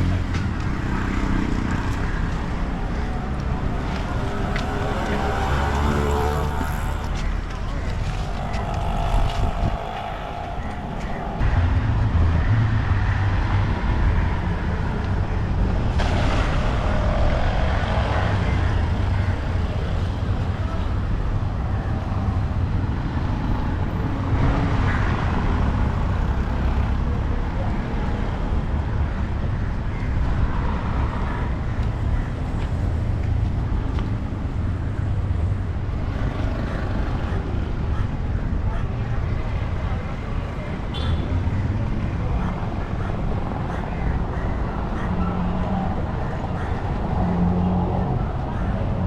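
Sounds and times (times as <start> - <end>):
boat engine rumbling: 0.0 - 12.3
wind or water noise: 0.0 - 49.0.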